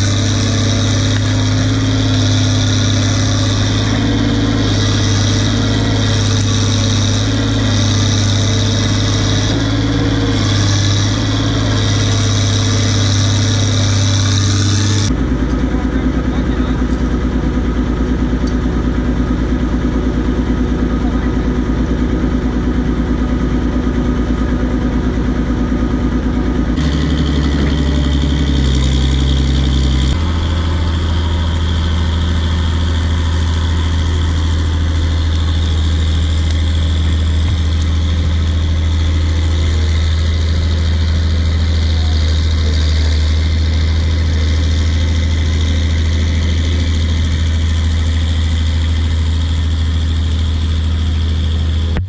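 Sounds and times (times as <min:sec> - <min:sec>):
bulldozer diesel engine under load: 0:00.0 - 0:52.0.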